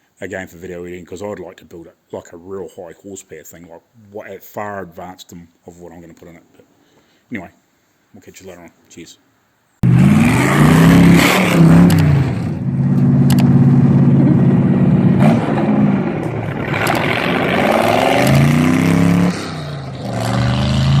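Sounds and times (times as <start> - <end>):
car engine revving: 9.8 - 21.0
sharp clicks: 11.8 - 12.1, 12.9 - 13.6, 16.2 - 17.1.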